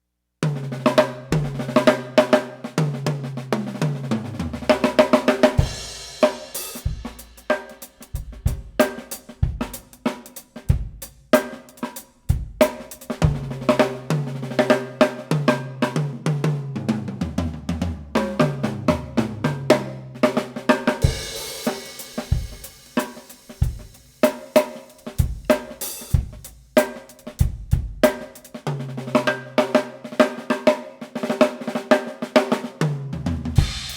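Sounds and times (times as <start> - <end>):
snare drum: 0.4 - 33.9
bass drum: 2.9 - 10.0, 10.6 - 11.2, 12.3 - 14.3, 21.0 - 24.2, 25.0 - 28.4, 33.2 - 33.9.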